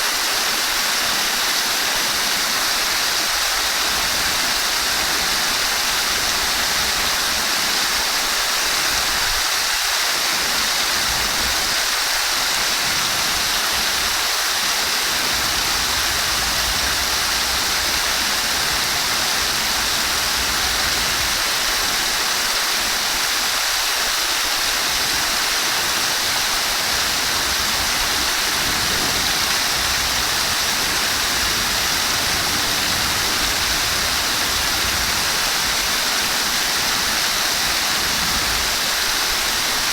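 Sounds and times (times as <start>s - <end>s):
running water: 0.0s - 39.9s.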